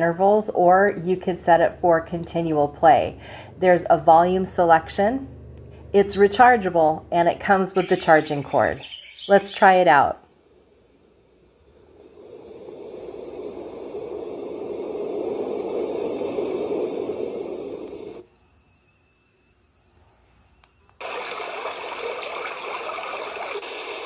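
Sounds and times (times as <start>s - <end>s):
low rushing wave noise: 6.0s - 18.2s
high cricket chirping: 7.5s - 21.9s
bright water-like hiss: 10.3s - 18.2s, 21.0s - 24.0s.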